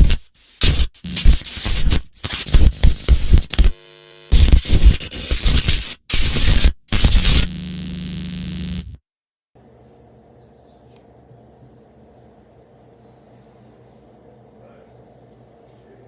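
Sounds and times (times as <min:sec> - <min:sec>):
buzzy tone: 0:00.0 - 0:09.0
harsh glitching static: 0:00.0 - 0:09.0
steady hum: 0:09.6 - 0:16.0.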